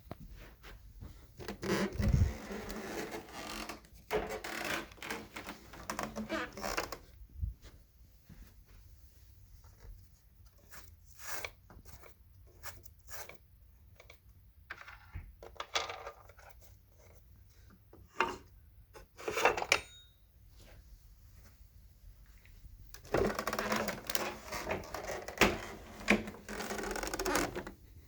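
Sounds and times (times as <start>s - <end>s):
vacuum parts clicking and rattling: 22.9s - 27.8s.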